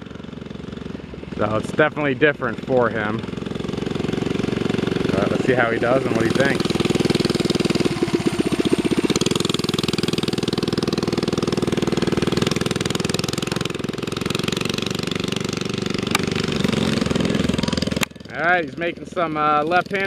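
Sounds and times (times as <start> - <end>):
mini bike engine running: 0.0 - 20.0.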